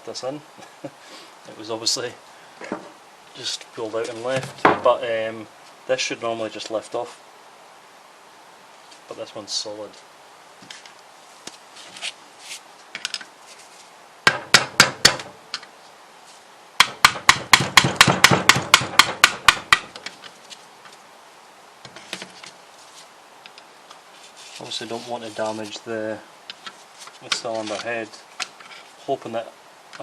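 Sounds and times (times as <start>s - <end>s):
hammer knocking on metal: 16.8s - 19.9s.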